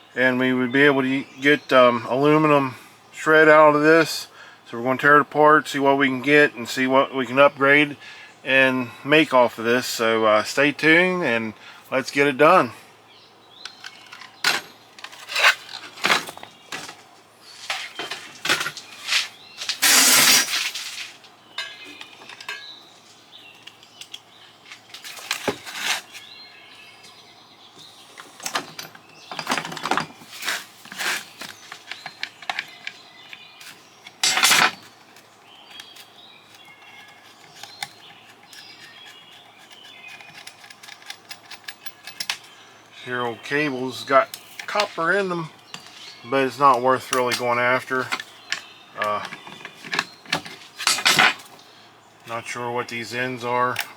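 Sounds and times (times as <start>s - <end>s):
harsh crunch: 17.6s - 21.2s
metal and plastic parts clinking: 34.2s - 34.8s, 40.1s - 42.5s, 48.1s - 51.5s.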